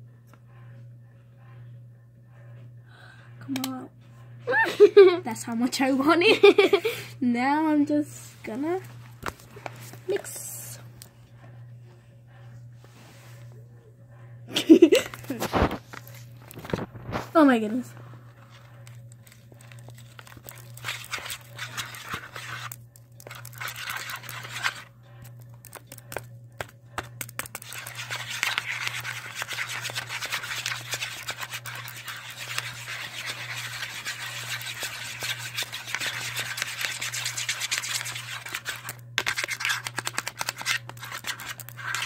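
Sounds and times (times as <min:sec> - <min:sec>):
steady low hum: 0:00.0 - 0:42.0
slime being mixed by hand: 0:15.2 - 0:42.0.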